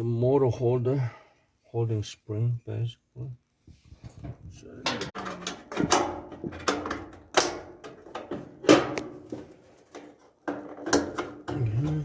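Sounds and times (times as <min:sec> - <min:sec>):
dryer parts knocking and clattering: 0:04.1 - 0:12.0.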